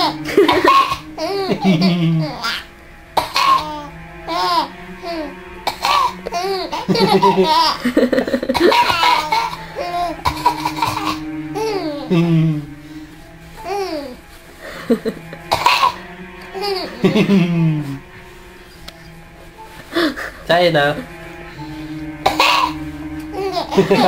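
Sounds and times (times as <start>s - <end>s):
baby laughing: 0.0s - 12.6s, 22.3s - 24.0s.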